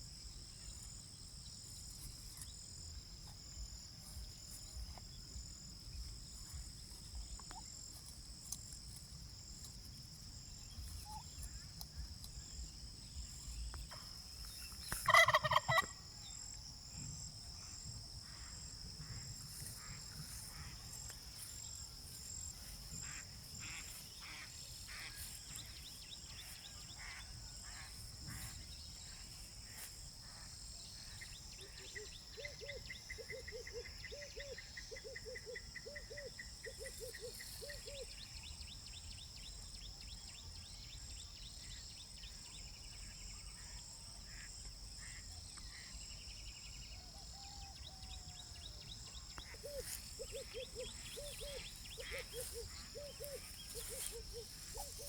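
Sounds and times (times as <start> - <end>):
crickets chirring: 0.0 - 55.0
turkey gobbling: 15.0 - 15.9.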